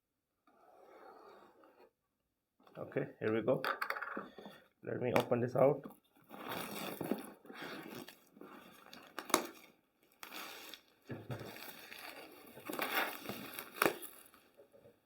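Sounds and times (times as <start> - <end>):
packaging crinkling and rustling: 6.3 - 14.6.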